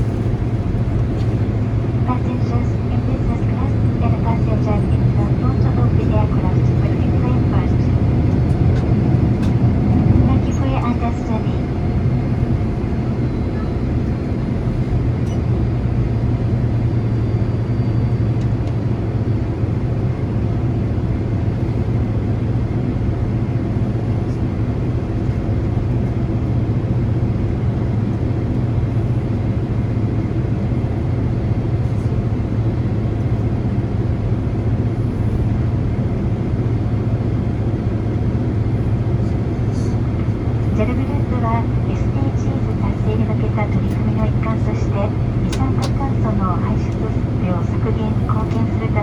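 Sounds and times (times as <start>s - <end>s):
airplane cabin engine hum: 0.0s - 49.0s
air conditioning hum: 31.9s - 49.0s.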